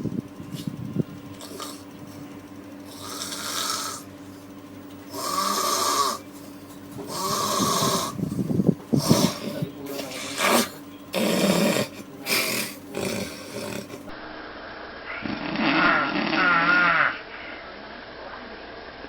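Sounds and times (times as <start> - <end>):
low rasping snores: 1.4 - 1.8, 2.9 - 4.1, 5.1 - 6.2, 7.0 - 8.3, 9.0 - 14.1
long hissing breaths: 2.9 - 4.1, 5.1 - 6.3, 7.0 - 14.1.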